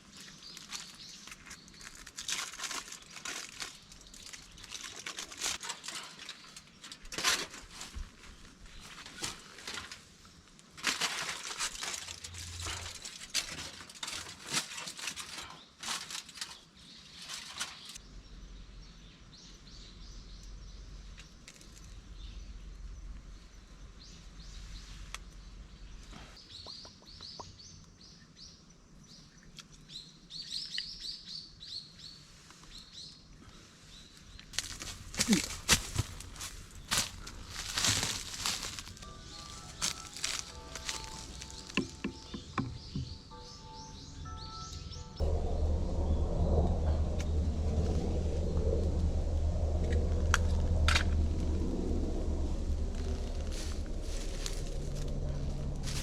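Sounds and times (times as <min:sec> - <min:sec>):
rustling and crinkling: 0:00.0 - 0:18.0, 0:33.9 - 0:43.1, 0:48.4 - 0:56.0
low steady rumble: 0:18.0 - 0:26.1, 0:34.3 - 0:56.0
small bird chirps: 0:23.4 - 0:28.6.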